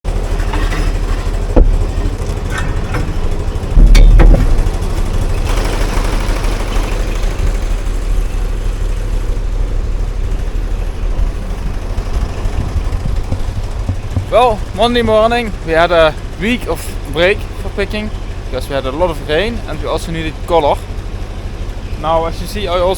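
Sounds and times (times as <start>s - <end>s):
tractor engine droning: 0.0s - 22.9s
heavy thump: 1.5s - 5.4s, 10.2s - 15.7s.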